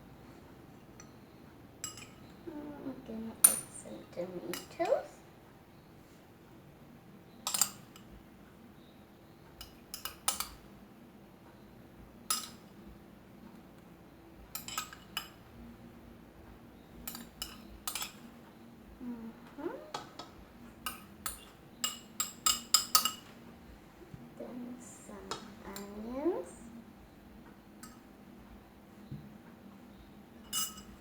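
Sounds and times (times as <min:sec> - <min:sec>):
cutlery clinking against a dish: 0:01.8 - 0:02.4, 0:03.4 - 0:03.8, 0:04.5 - 0:04.8, 0:07.4 - 0:08.2, 0:09.5 - 0:10.6, 0:12.3 - 0:12.8, 0:14.5 - 0:15.4, 0:17.0 - 0:18.4, 0:20.0 - 0:23.4, 0:27.8 - 0:28.0, 0:30.4 - 0:31.0.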